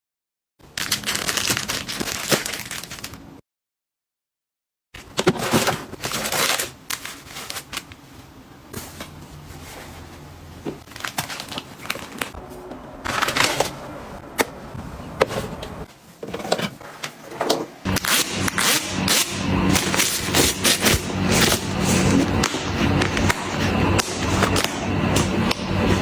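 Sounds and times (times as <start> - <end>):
rustling and crinkling: 5.0 - 12.4.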